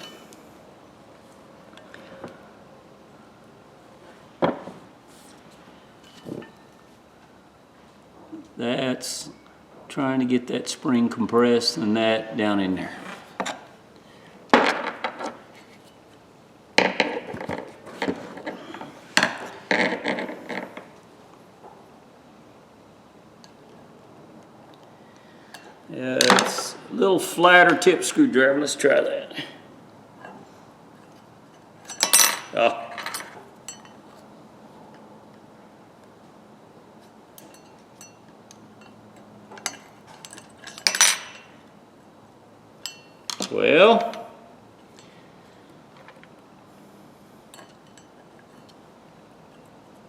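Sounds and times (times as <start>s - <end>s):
tools clicking and scraping: 31.0s - 34.3s, 37.0s - 41.7s, 47.5s - 48.8s.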